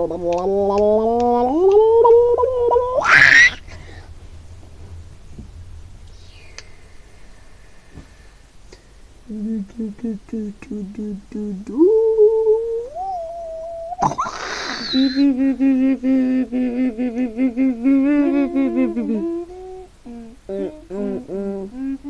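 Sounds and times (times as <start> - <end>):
child making silly vocal noises: 0.5 - 3.6, 12.1 - 15.5, 16.8 - 22.0.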